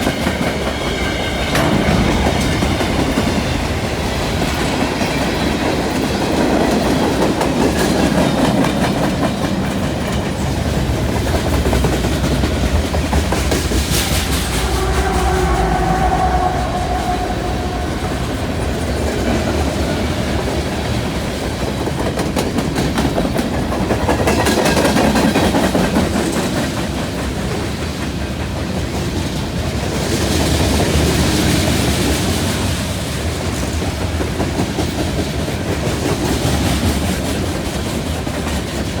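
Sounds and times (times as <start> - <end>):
freight train wheels clattering: 0.0 - 29.4.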